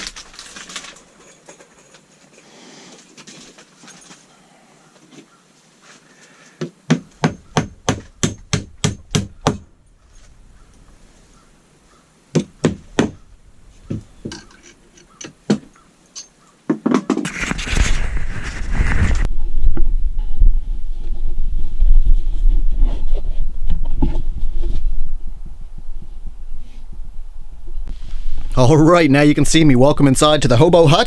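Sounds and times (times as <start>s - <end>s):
loud low rumbling: 19.1s - 30.9s.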